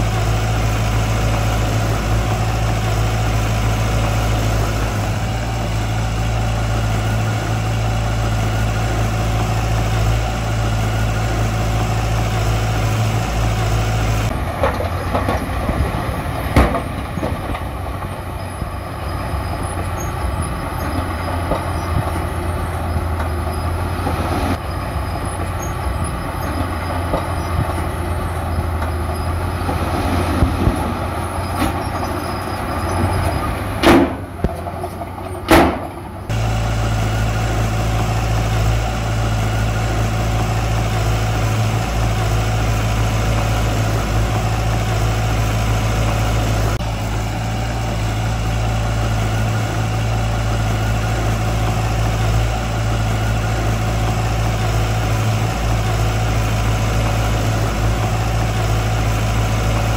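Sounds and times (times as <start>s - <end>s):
diesel engine of heavy machinery: 0.0s - 59.9s
machinery clunks: 14.3s - 37.7s.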